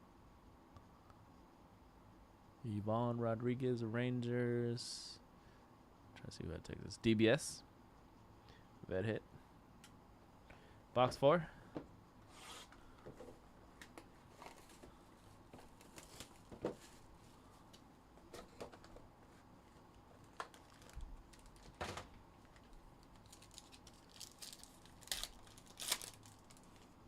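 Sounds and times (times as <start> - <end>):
wrapper crinkling and tearing: 15.6 - 16.5, 20.2 - 21.8, 22.5 - 27.0.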